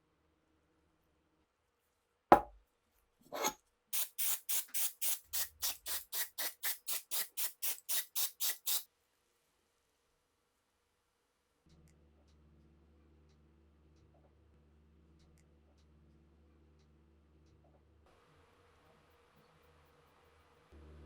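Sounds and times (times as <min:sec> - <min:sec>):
sharp knock: 0:02.3 - 0:02.6
short scrape: 0:03.3 - 0:06.0
hand tool rubbing strokes: 0:03.3 - 0:08.8.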